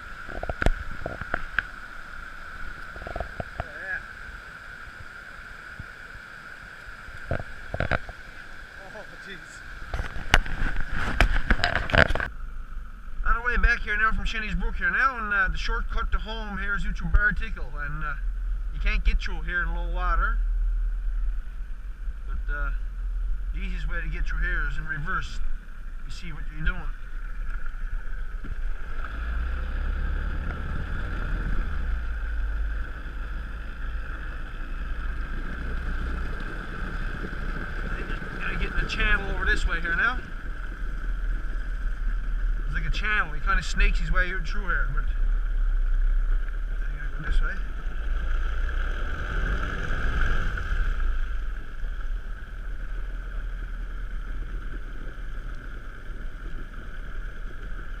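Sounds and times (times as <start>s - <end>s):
wind on microphone: 0.0s - 1.8s, 9.6s - 12.4s
outboard motor running: 0.0s - 58.0s
wind buffeting microphone: 9.6s - 12.4s, 19.9s - 58.0s.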